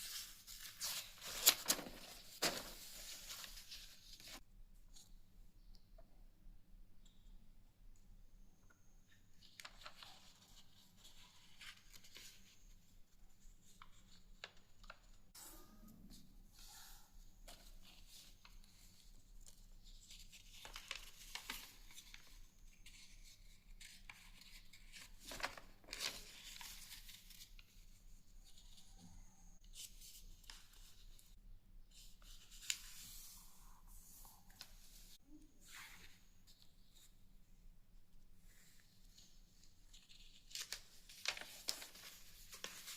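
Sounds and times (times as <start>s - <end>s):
paper rustling: 0.0s - 4.4s, 9.4s - 12.7s, 17.4s - 28.8s, 38.5s - 42.9s.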